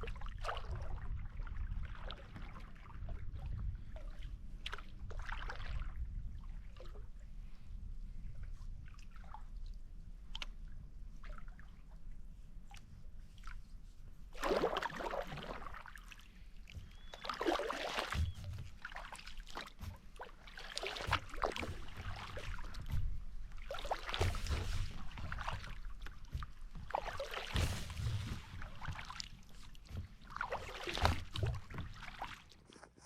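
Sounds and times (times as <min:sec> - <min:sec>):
paddle strokes splashing in water: 0:00.0 - 0:32.6
water dripping from paddle: 0:14.4 - 0:27.6.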